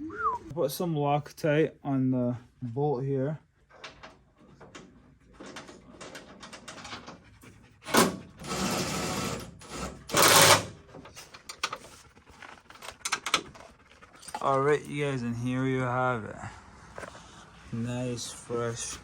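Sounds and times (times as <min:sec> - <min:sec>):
bolts clicking and knocking: 0:09.6 - 0:11.8.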